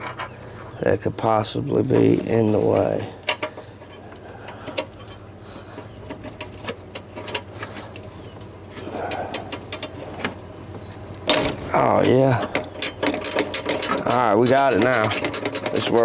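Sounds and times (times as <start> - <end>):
low cooing: 8.8 - 9.7.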